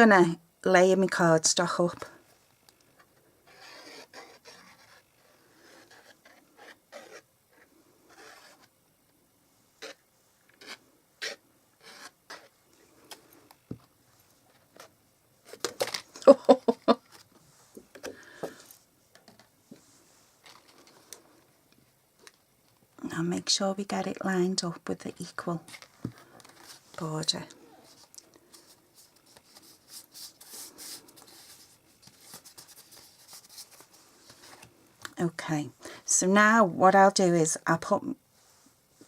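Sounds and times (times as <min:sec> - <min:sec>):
paper rustling and rubbing: 0:03.4 - 0:08.7, 0:27.8 - 0:34.7.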